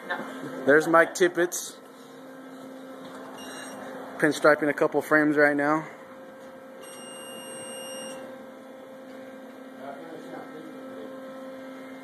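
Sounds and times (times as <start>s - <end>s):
steady hum: 0.0s - 12.0s
thin high whine: 3.3s - 4.5s, 6.8s - 8.4s.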